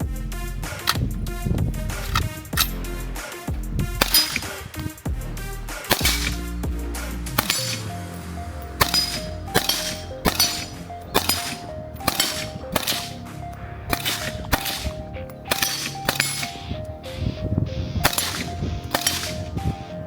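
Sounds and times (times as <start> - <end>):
suppressed rifle shots: 0.6 - 3.2, 3.9 - 5.0, 5.8 - 17.4, 18.0 - 20.0.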